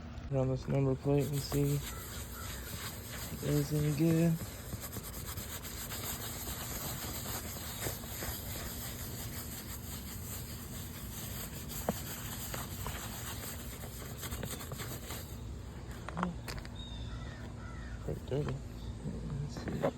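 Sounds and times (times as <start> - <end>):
paper towel rubbing plastic: 1.0 - 15.5.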